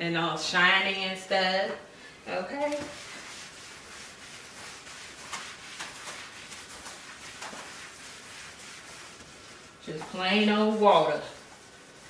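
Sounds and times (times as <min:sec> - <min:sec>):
paper towel rubbing on steel: 0:02.6 - 0:12.0.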